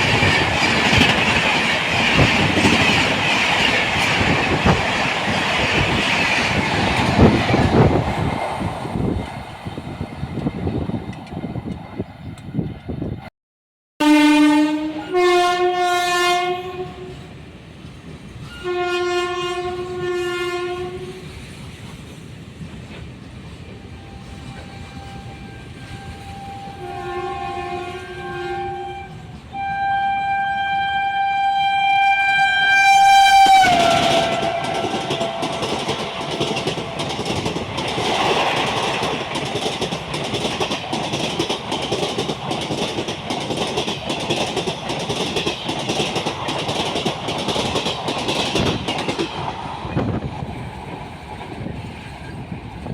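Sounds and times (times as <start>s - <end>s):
train coaches clickety-clack: 0.0s - 13.2s, 14.9s - 29.6s, 31.9s - 52.9s
train horn blasts: 14.0s - 17.3s, 18.4s - 21.3s, 23.9s - 37.2s.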